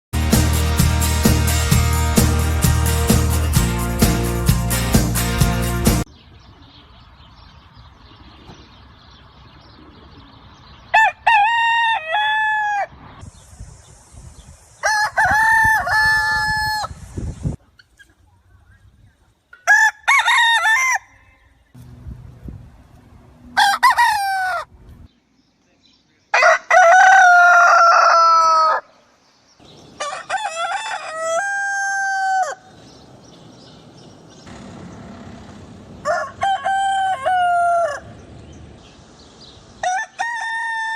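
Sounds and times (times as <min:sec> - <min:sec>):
roosters crowing: 0:10.9 - 0:13.2, 0:14.8 - 0:17.1, 0:19.6 - 0:21.6, 0:23.5 - 0:24.8, 0:26.3 - 0:38.8, 0:39.6 - 0:40.9.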